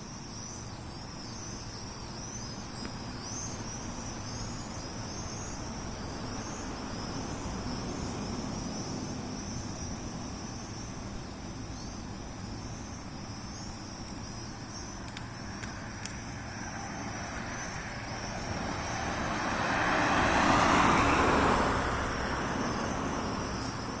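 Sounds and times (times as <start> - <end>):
crickets chirring: 0.0 - 24.0
car passing: 15.4 - 24.0.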